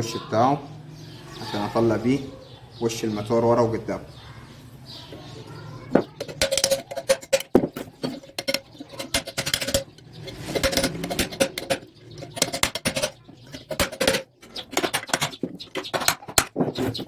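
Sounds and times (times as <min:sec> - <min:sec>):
metal-on-metal knocks: 0:05.8 - 0:17.0.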